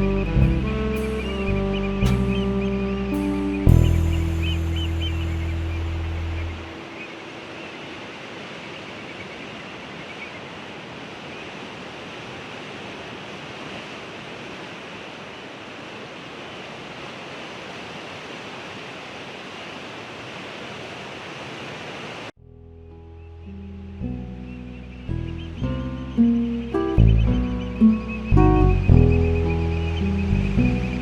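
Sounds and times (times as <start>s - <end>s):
ocean waves rushing: 0.0s - 22.3s.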